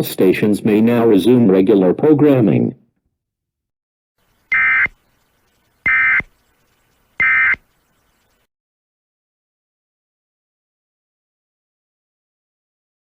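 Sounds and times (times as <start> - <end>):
electronic data tone bursts: 4.5 - 8.3.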